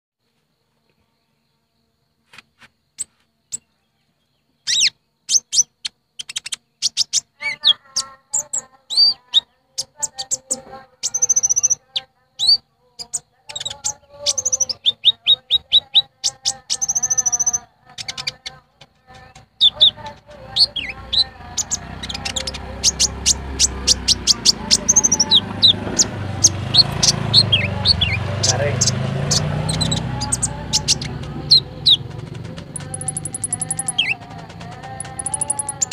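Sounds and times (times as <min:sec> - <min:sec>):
sunbird chirps and trills: 0:00.8 - 0:35.9.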